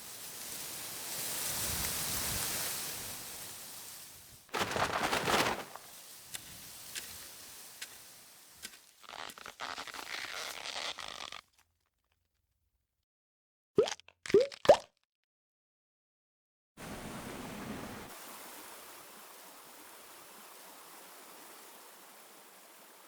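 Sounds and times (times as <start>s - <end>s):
hiss of noise: 0.0s - 4.5s, 5.5s - 8.9s
rustling crunch: 4.5s - 11.7s.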